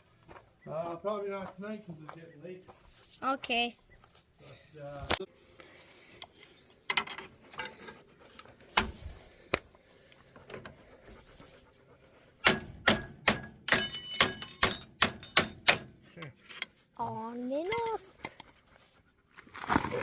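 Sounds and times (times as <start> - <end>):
metal tools clicking and knocking: 6.8 - 9.0, 12.5 - 16.8
ringing metallic clatter: 13.6 - 16.0.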